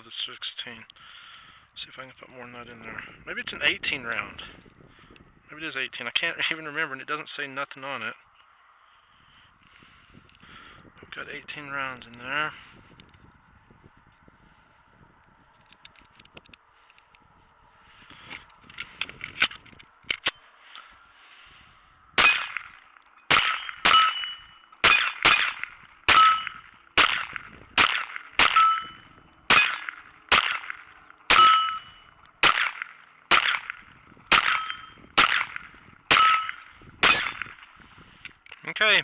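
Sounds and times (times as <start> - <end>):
pistol shots: 22.2 - 22.7, 23.3 - 28.9, 29.5 - 31.8, 32.4 - 37.5.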